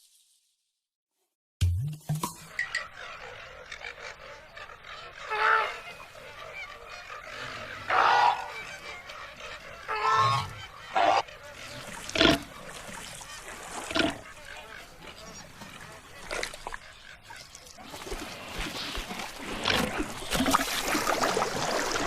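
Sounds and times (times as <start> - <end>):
animal honking calls: 3.6 - 5.9, 6.9 - 8.8, 9.7 - 12.5.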